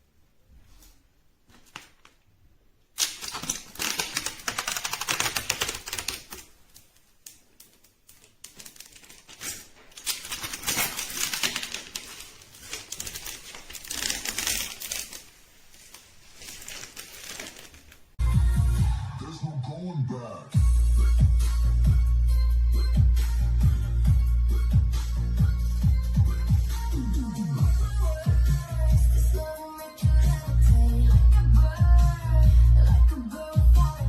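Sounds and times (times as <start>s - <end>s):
rapid small clicks and clatter: 3.0s - 15.2s.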